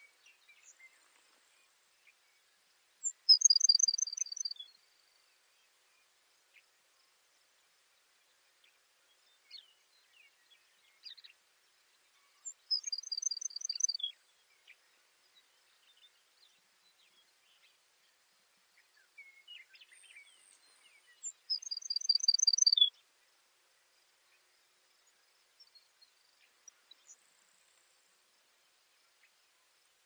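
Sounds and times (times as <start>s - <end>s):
faint bird chirps and ticks: 0.0s - 30.0s
sparrow singing: 3.0s - 4.7s, 12.4s - 14.8s, 19.2s - 23.0s.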